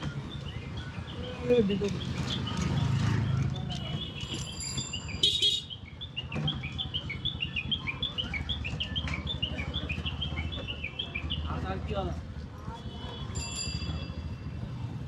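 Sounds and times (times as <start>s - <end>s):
birds chirping: 0.0s - 11.9s.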